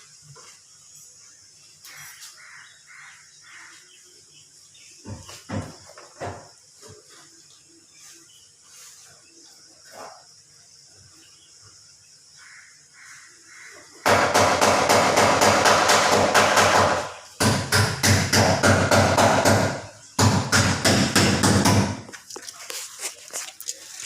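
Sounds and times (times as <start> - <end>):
rapid tool impacts: 14.0 - 24.0.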